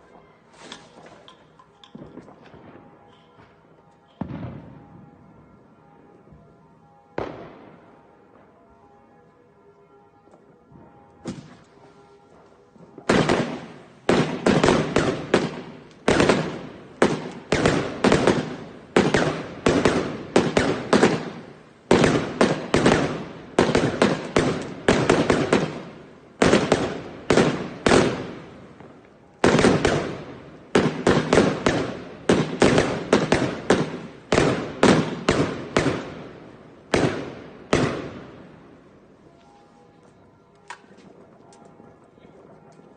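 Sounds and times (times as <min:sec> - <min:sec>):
fireworks bangs: 0:00.0 - 0:05.5, 0:10.7 - 0:38.9.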